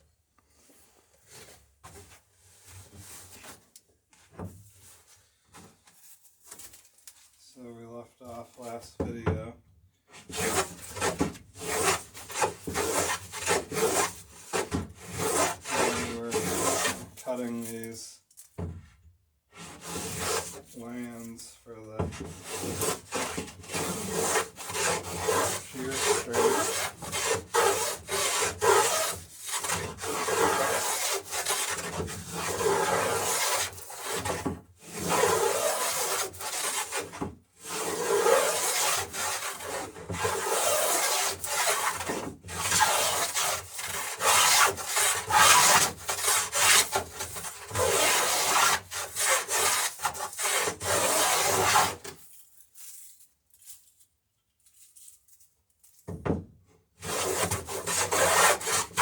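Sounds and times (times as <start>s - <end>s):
hand tool shaving wood: 10.3s - 17.1s, 22.1s - 52.2s, 57.0s - 59.0s.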